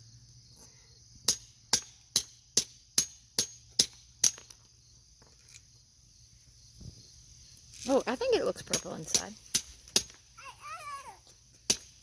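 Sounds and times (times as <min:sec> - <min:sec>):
hammer striking rock: 0:01.3 - 0:04.6, 0:08.7 - 0:10.2, 0:11.6 - 0:12.0.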